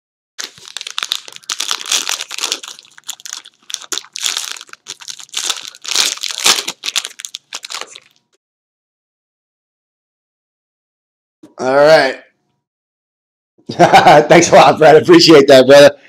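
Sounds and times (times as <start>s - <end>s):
plastic wrapping crinkling: 0.4s - 8.4s.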